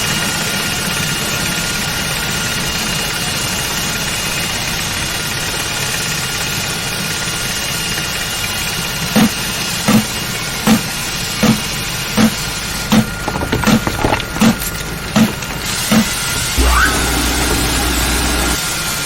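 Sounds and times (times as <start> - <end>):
high constant whine: 8.0 - 19.0
heavy industrial machinery drone: 14.4 - 19.0.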